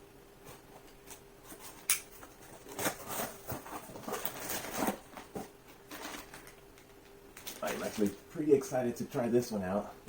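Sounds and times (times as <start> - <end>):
filament packaging rustling: 0.5 - 8.4.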